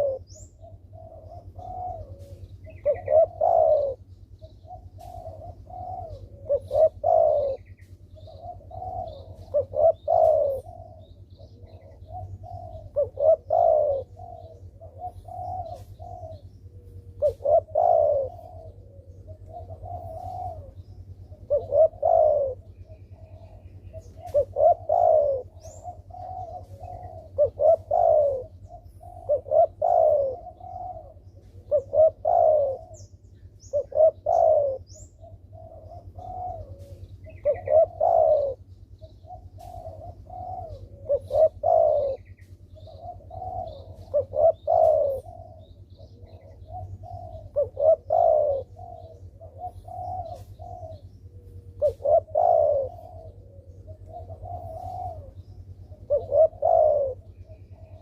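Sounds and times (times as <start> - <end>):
dove cooing: 0.0 - 58.0
low steady hum: 0.0 - 58.0.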